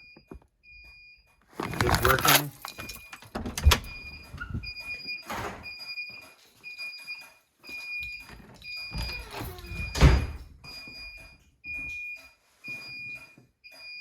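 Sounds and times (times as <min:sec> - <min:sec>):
alarm beeping: 0:00.2 - 0:14.0
door creaking: 0:01.6 - 0:05.8, 0:08.2 - 0:10.5
door shutting with thud: 0:03.3 - 0:05.8, 0:08.9 - 0:10.5.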